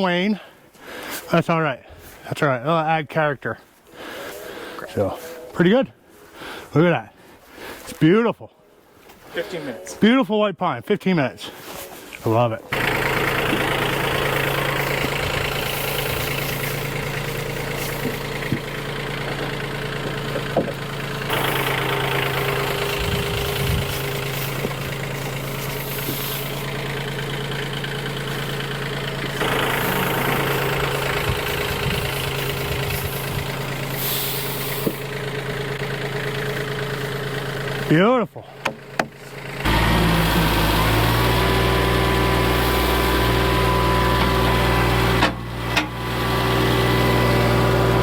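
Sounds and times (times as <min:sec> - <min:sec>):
engine idling: 0:11.4 - 0:48.0.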